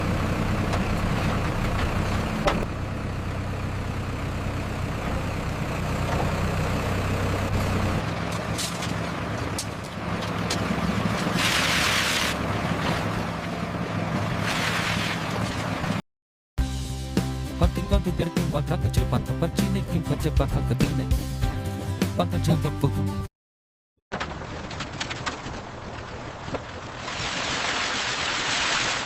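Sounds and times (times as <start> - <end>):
heavy engine humming: 0.0 - 16.0.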